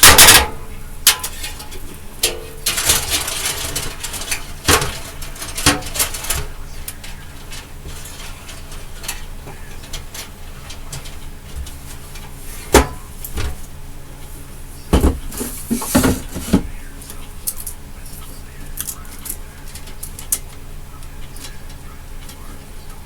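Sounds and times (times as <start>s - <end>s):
clattering: 0.0s - 13.7s, 14.9s - 16.8s
steady low hum: 0.0s - 23.0s.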